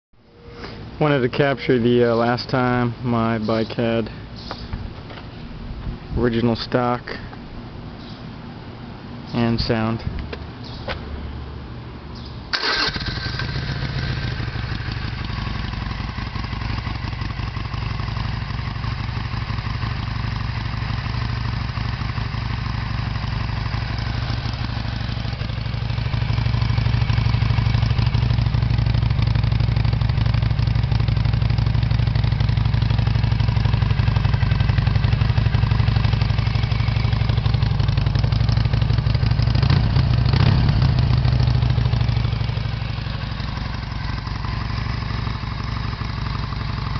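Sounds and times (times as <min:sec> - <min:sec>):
motorcycle engine idling: 0:12.6 - 0:46.9.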